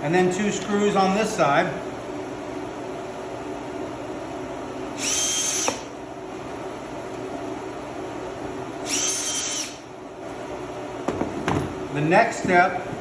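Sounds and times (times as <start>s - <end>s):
power drill driving screws: 5.0s - 5.9s, 8.8s - 9.8s.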